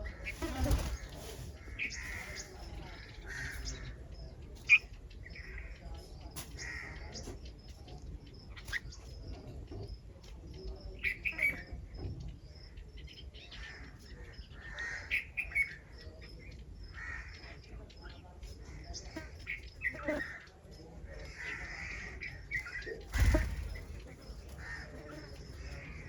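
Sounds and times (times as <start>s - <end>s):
small birds chirping: 0.0s - 26.0s
crow cawing: 3.0s - 4.0s, 14.6s - 15.3s, 17.0s - 17.4s, 21.2s - 22.4s, 24.6s - 25.3s.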